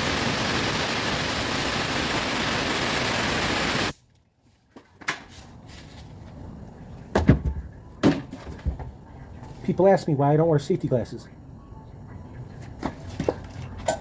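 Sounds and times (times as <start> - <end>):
steady loud hiss: 0.0 - 3.9.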